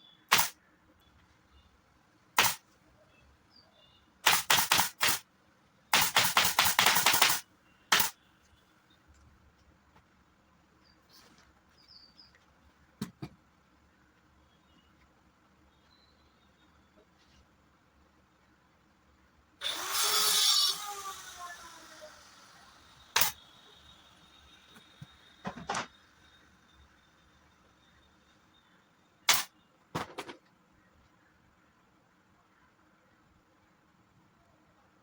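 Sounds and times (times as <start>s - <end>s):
staple gun firing: 0.3s - 0.6s, 6.0s - 8.2s, 23.2s - 23.4s, 29.3s - 29.5s.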